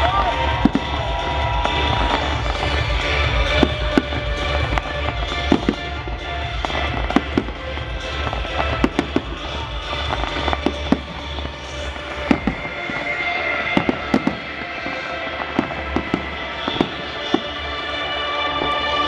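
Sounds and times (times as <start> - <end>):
fireworks bursting: 0.0 - 19.0
steady music: 0.0 - 19.0.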